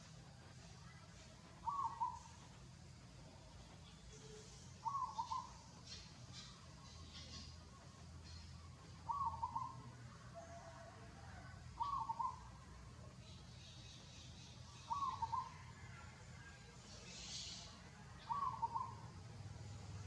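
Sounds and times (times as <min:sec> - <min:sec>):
bird calling: 0:01.6 - 0:02.6, 0:03.8 - 0:07.6, 0:09.0 - 0:09.9, 0:11.8 - 0:12.5, 0:14.6 - 0:15.9, 0:17.1 - 0:19.1.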